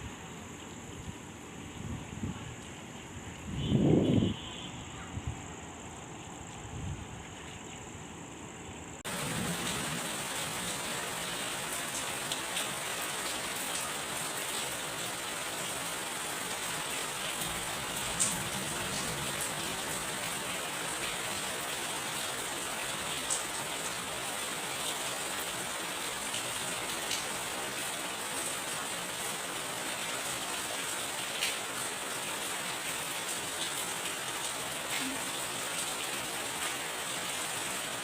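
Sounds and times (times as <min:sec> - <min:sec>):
steady rain falling: 0:00.0 - 0:38.0
sharp raindrop strikes: 0:17.0 - 0:21.5.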